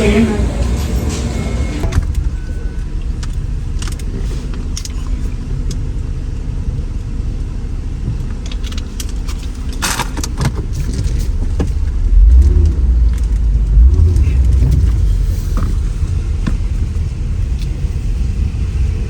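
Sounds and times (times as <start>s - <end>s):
engine and road noise drone: 0.0s - 19.0s
clatter: 1.8s - 19.0s
light rattles and clicks: 3.0s - 7.1s, 8.0s - 18.9s.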